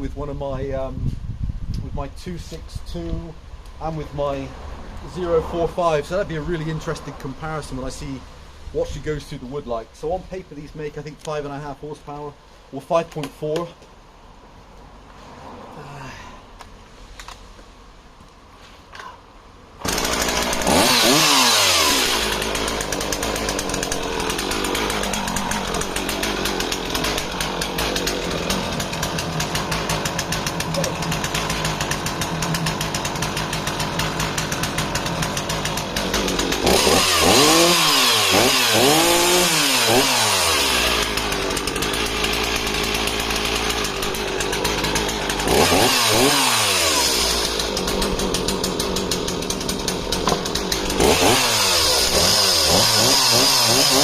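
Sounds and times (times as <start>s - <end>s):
chainsaw idling and revving: 2.9s - 8.1s, 19.8s - 54.0s.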